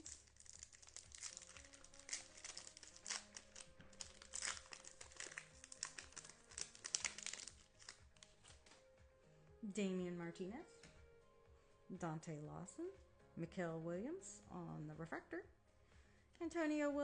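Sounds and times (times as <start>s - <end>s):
wrapper tearing and crinkling: 0.0s - 8.8s
quiet background music: 0.0s - 17.0s.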